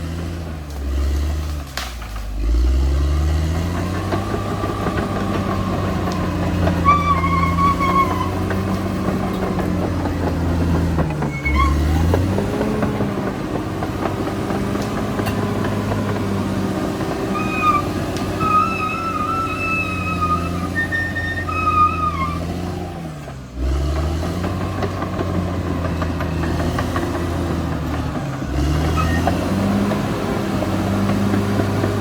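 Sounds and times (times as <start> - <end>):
bulldozer diesel engine under load: 0.0 - 32.0
high-pitched wavering squeal: 6.8 - 8.4, 17.3 - 22.5.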